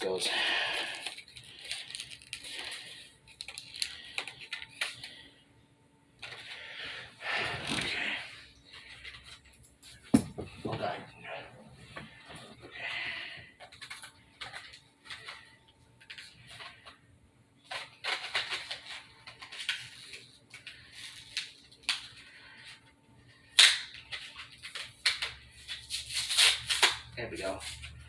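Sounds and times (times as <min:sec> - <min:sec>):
flashlight handling clicks and rustles: 0:00.9 - 0:05.0.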